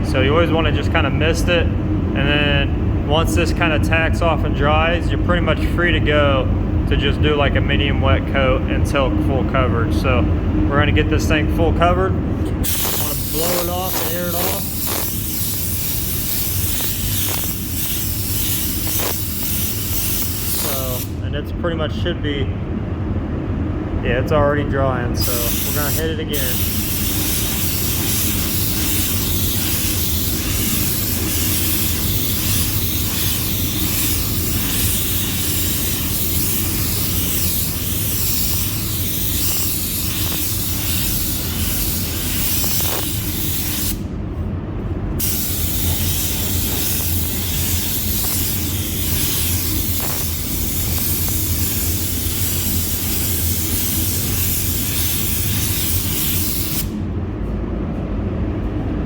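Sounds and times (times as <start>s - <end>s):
steady low hum: 0.0s - 59.0s
spray gun hissing: 12.6s - 21.2s, 25.2s - 44.0s, 45.2s - 57.0s.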